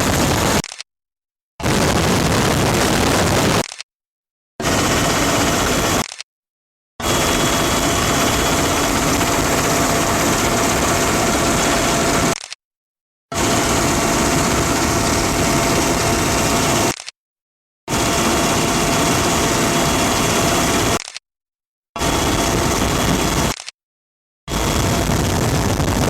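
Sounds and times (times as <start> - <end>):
helicopter engine and rotor drone: 0.0 - 0.6, 1.6 - 3.6, 4.6 - 6.1, 7.0 - 12.4, 13.3 - 17.0, 17.9 - 21.0, 22.0 - 23.6, 24.5 - 26.0.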